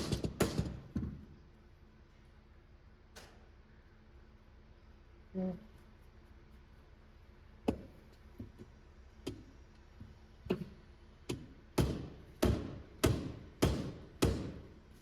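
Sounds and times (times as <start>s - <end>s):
hammer knocking on metal shaft: 11.3s - 14.6s.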